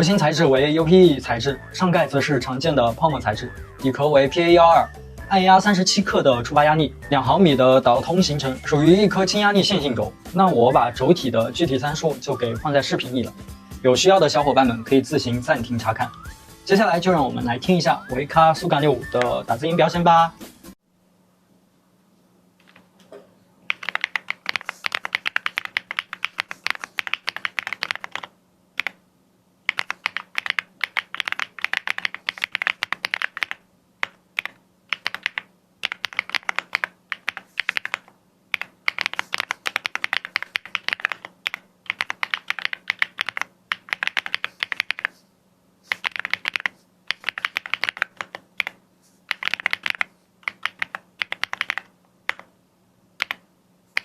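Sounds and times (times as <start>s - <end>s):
keyboard typing: 22.6s - 22.9s, 23.7s - 29.0s, 29.7s - 45.2s, 45.9s - 52.5s, 53.2s - 54.0s.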